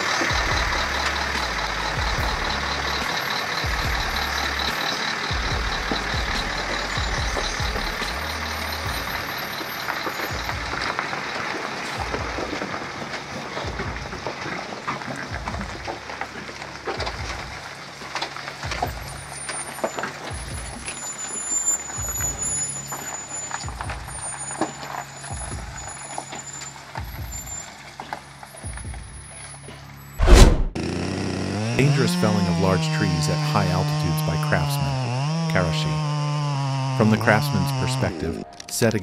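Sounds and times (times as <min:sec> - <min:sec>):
truck engine hum: 0:00.0 - 0:39.0
low rumbles: 0:00.1 - 0:09.4, 0:30.2 - 0:30.8.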